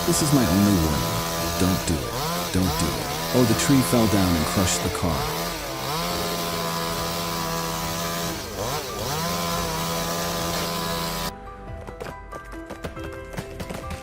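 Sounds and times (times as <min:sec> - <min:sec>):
chainsaw engine at high revs: 0:00.0 - 0:11.3.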